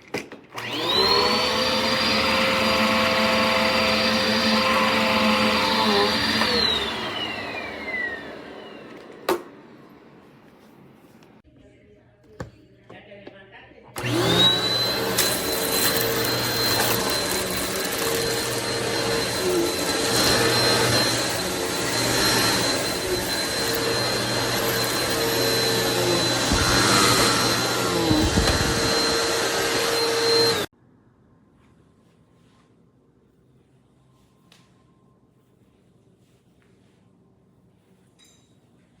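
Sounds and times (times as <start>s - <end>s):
vacuum cleaner running: 0.5s - 10.4s, 14.0s - 30.7s.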